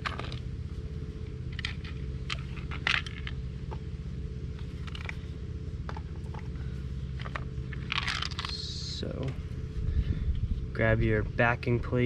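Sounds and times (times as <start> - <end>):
steady low hum: 0.0 - 12.0
small metal parts clinking: 1.5 - 3.8, 4.6 - 5.3, 7.1 - 8.9.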